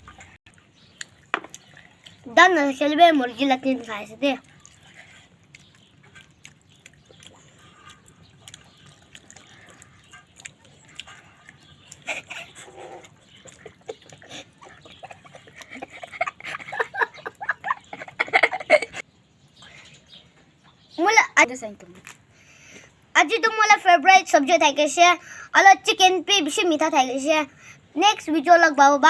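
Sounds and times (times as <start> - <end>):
wet chewing and lip-smacking: 0.0 - 2.3, 4.3 - 19.7.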